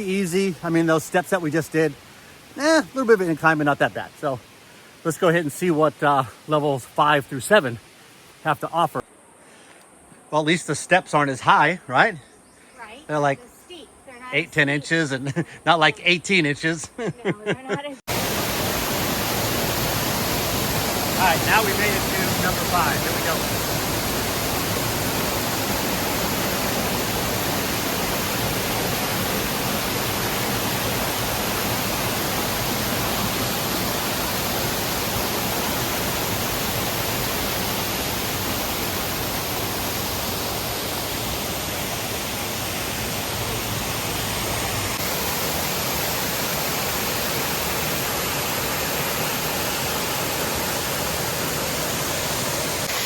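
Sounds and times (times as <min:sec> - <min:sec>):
waterfall rushing: 0:00.0 - 0:07.3, 0:18.1 - 0:53.0.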